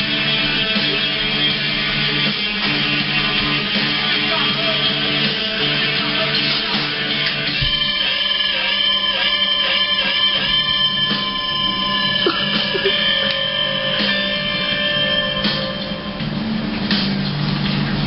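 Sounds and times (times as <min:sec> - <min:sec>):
guitar-led rock music: 0:00.0 - 0:18.0.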